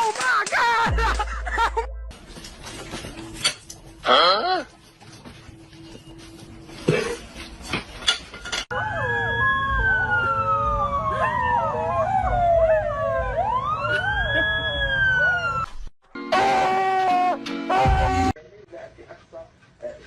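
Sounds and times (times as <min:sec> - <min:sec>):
siren wailing: 0:08.7 - 0:16.9.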